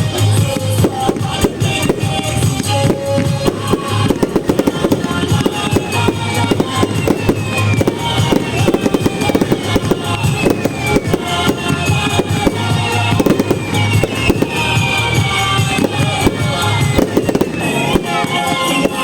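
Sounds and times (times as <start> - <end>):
fireworks bangs and crackles: 0.0 - 19.0
loud music with bass beat: 0.0 - 19.0.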